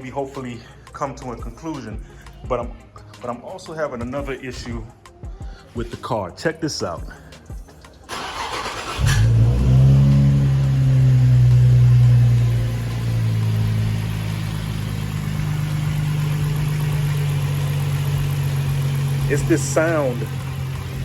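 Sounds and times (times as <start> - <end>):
car engine starting and idling: 8.1 - 21.0.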